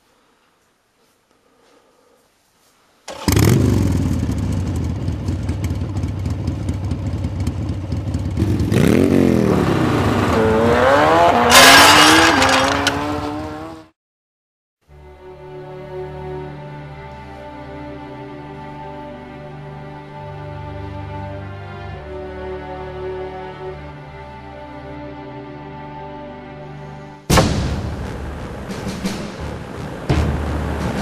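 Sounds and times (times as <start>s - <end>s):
motor revving loudly: 9.6s - 13.8s.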